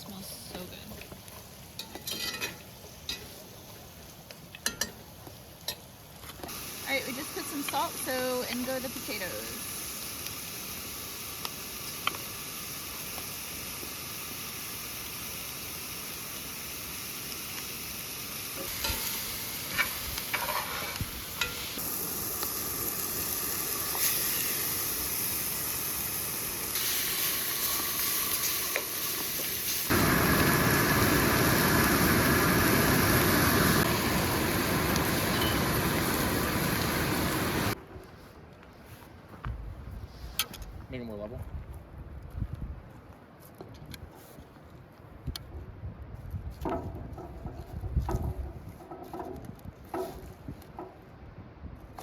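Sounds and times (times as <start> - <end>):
vegetables sizzling in a pot: 0.0 - 37.8.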